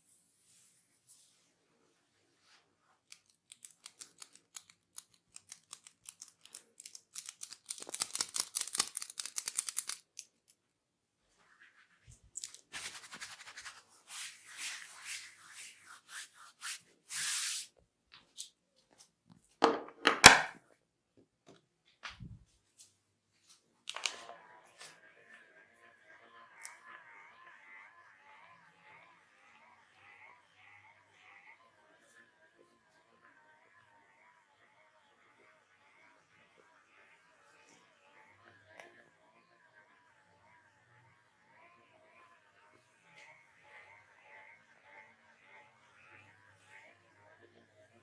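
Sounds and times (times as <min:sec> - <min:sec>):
rubbing on hair and scalp: 0:11.3 - 0:17.7
hair crackling between fingers: 0:12.4 - 0:17.6.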